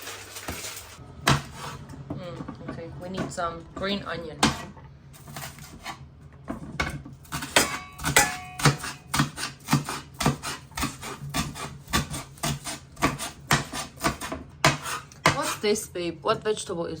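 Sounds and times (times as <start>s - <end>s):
knife chopping on cutting board: 1.2s - 1.8s, 4.4s - 6.0s, 6.6s - 15.6s.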